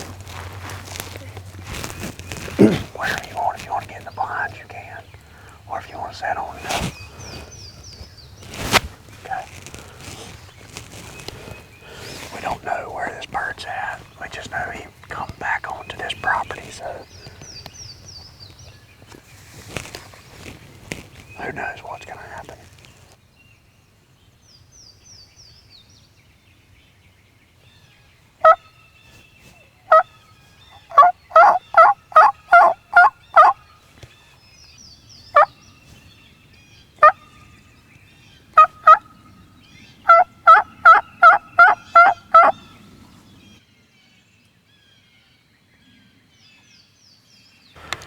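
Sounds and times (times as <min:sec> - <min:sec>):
small bird chirping: 0:00.0 - 0:23.6, 0:27.3 - 0:43.6
turkey yelping: 0:30.7 - 0:33.6, 0:38.6 - 0:39.2, 0:40.1 - 0:42.7.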